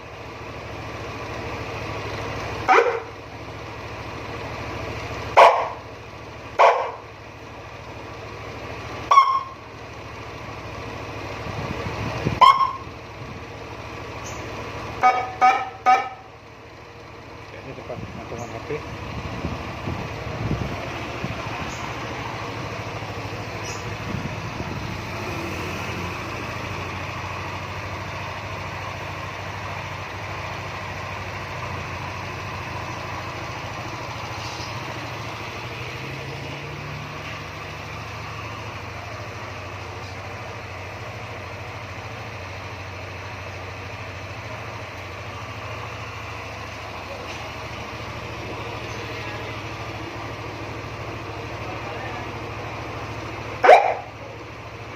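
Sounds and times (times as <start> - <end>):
scooter engine idling: 0.0 - 54.9.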